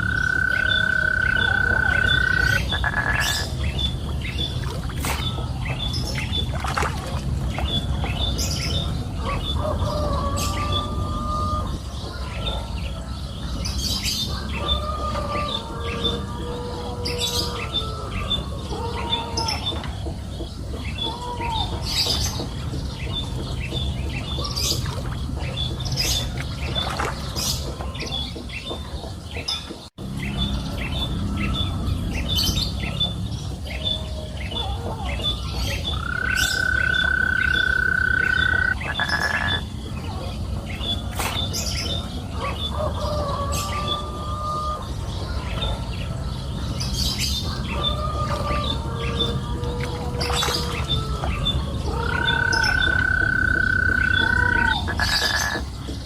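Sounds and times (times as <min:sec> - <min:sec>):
repeating bird chirp: 0:00.0 - 0:06.4, 0:35.2 - 0:42.0, 0:51.9 - 0:55.6
birds chirping and calling: 0:00.0 - 0:56.0.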